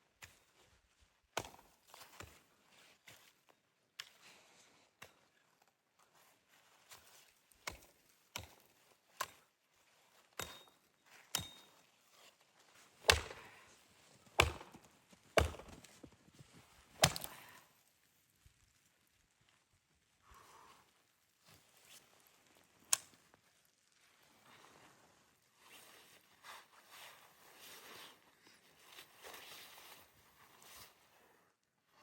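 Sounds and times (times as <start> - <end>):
wood being chopped: 11.3 - 11.6, 13.0 - 13.6, 14.4 - 15.9, 17.0 - 17.4.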